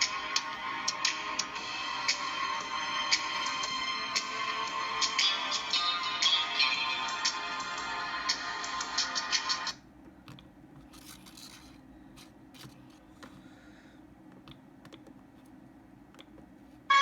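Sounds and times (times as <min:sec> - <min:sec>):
mobile phone handling clicks and scratching: 0:10.3 - 0:13.5.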